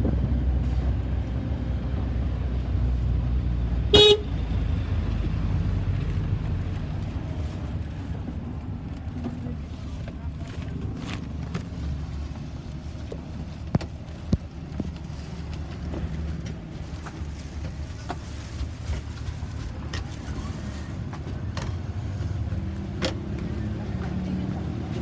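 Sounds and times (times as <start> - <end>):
road traffic rumble: 0.0 - 25.0.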